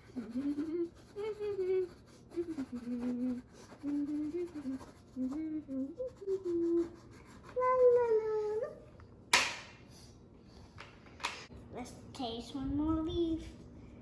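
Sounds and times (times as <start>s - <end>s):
crayon scratching on paper: 0.0s - 8.6s
child humming a wordless tune: 0.0s - 8.8s.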